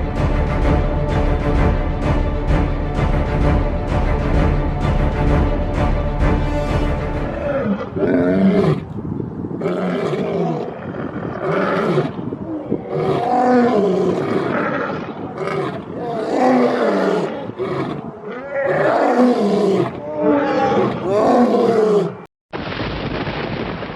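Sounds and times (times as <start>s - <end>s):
lion-like roars: 7.2s - 8.9s, 9.6s - 22.3s.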